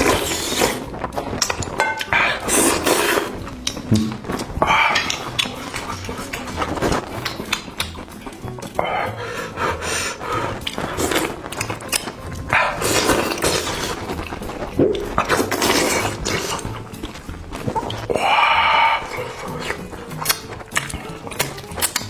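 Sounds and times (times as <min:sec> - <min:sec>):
person eating noisily: 0:00.0 - 0:22.0.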